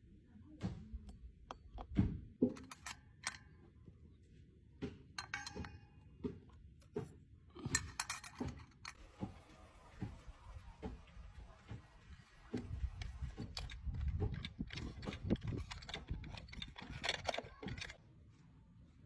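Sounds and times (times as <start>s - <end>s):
metal parts clinking and knocking: 1.5s - 3.5s, 5.2s - 6.0s, 7.6s - 9.0s, 12.6s - 18.0s
ringing rattle: 2.6s - 3.4s, 5.2s - 6.0s, 7.7s - 8.9s, 13.3s - 18.0s.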